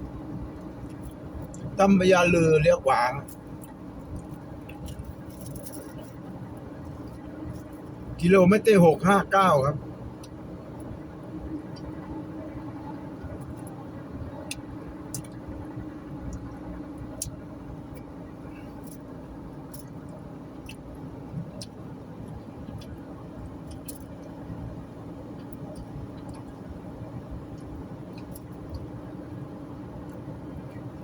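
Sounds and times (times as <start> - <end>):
car road and engine drone: 0.0 - 31.0.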